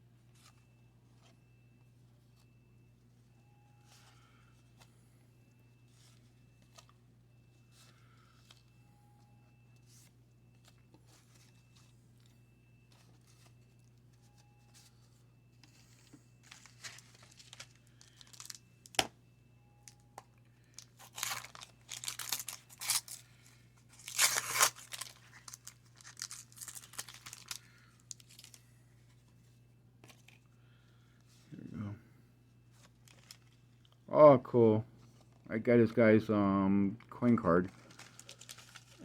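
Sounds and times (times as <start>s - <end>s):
wax paper tearing and crinkling: 21.0s - 23.2s, 24.0s - 28.6s, 37.7s - 39.0s.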